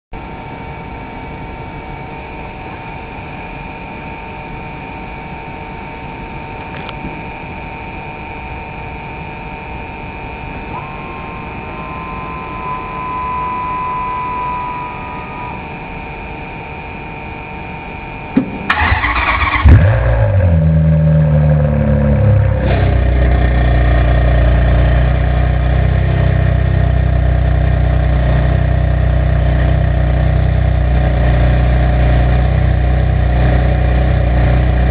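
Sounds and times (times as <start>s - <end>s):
steady hum with tones: 0.2s - 34.9s
car engine starting and idling: 18.4s - 34.9s
starter motor cranking: 18.7s - 20.1s.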